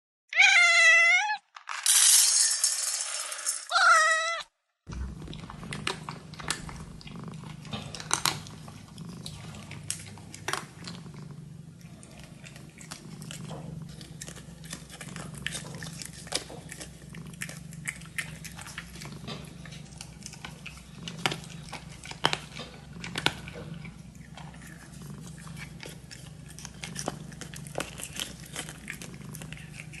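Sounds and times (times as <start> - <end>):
kitten high calls: 0.3 - 1.4, 3.7 - 4.5
kitten chewing food crunches: 4.9 - 30.0
kitten purring: 4.9 - 30.0.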